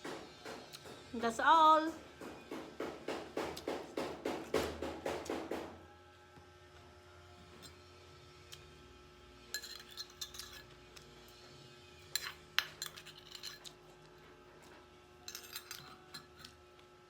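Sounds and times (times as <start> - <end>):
utensil clinking against a dish: 9.5 - 10.8, 12.1 - 14.0, 14.6 - 16.6.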